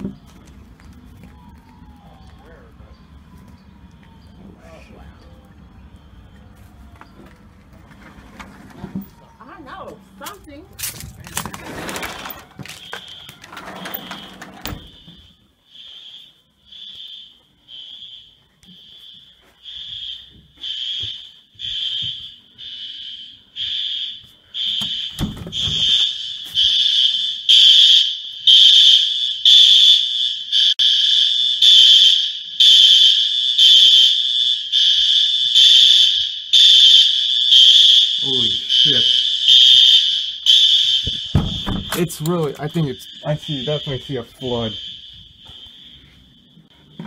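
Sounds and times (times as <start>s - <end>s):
fire alarm beeping: 11.3s - 47.0s.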